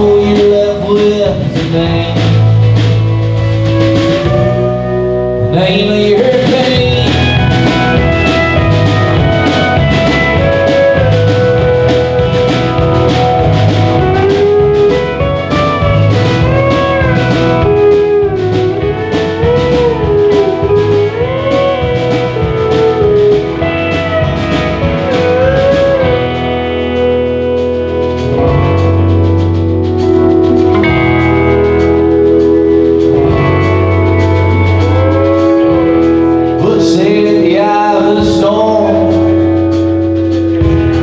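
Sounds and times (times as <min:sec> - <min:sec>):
drum beat: 0:00.0 - 0:05.1, 0:05.9 - 0:41.0
bass guitar: 0:00.0 - 0:41.0
lead guitar melody: 0:00.0 - 0:41.0.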